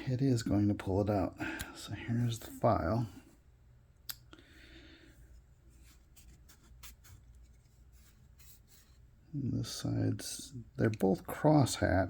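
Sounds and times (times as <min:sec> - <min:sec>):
soft scrape: 0:05.3 - 0:09.1.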